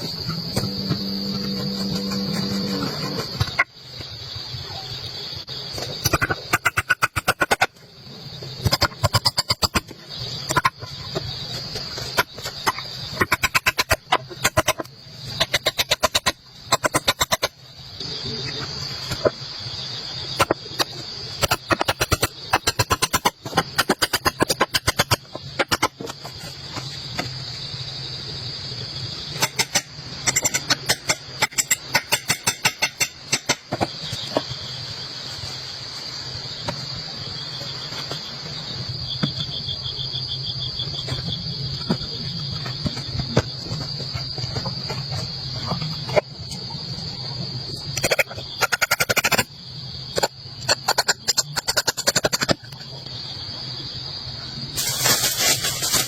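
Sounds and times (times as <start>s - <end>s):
crickets trilling: 0.0s - 56.0s
sharp rapid clicks: 6.1s - 7.7s, 48.0s - 49.5s, 50.2s - 52.6s.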